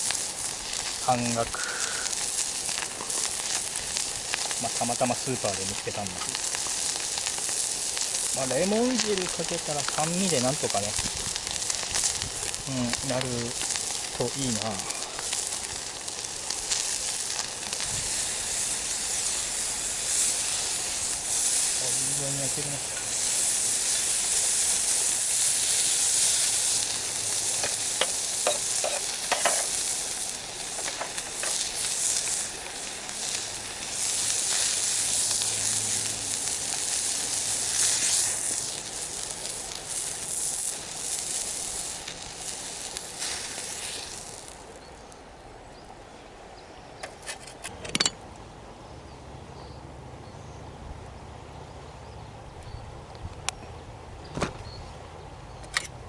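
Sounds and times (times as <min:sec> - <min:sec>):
meat sizzling over fire: 0:00.0 - 0:48.3.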